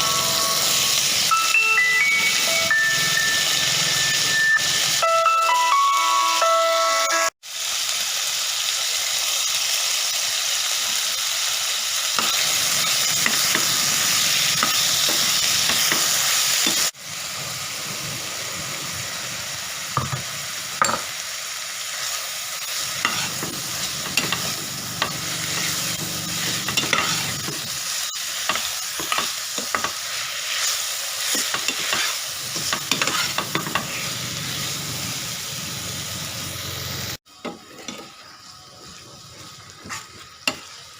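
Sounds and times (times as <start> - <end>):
food sizzling in hot oil: 0.0 - 40.9
spoon scraping a pan: 22.7 - 25.8, 26.4 - 34.1, 37.4 - 38.3, 39.8 - 40.8.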